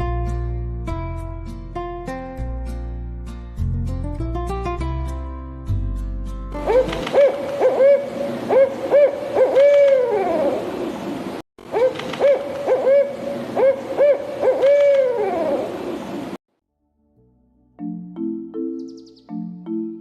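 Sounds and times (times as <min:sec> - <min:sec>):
owl hooting: 0:06.6 - 0:10.9, 0:11.7 - 0:16.1.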